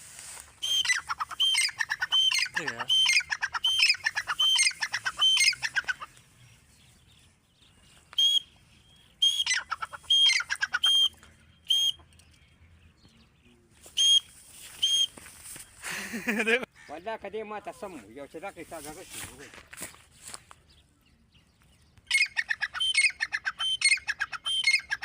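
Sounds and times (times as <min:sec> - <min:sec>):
bird calling high-pitched notes: 0:00.3 - 0:06.3, 0:08.0 - 0:12.3, 0:13.8 - 0:15.4, 0:22.1 - 0:25.0.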